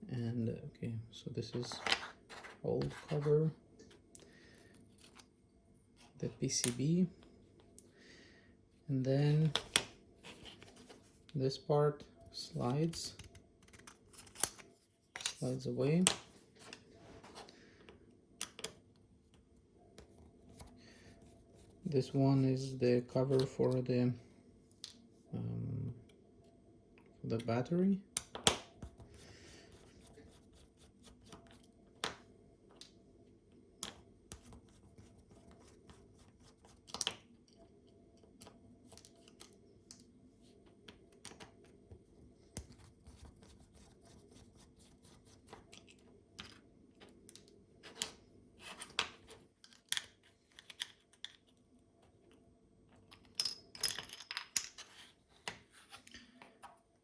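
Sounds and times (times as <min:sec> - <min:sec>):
faint steady hum: 0:00.0 - 0:57.0.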